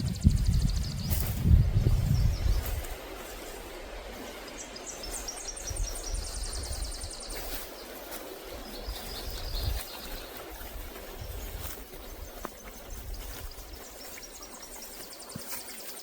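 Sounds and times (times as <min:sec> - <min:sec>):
songbird singing: 0:00.0 - 0:16.0.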